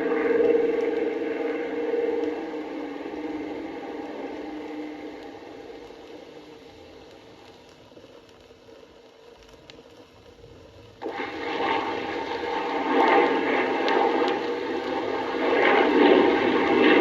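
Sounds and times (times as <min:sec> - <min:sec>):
loud rushing aircraft engine: 0:00.0 - 0:06.4, 0:11.0 - 0:17.0
faint aircraft engine: 0:00.0 - 0:09.3, 0:10.1 - 0:17.0.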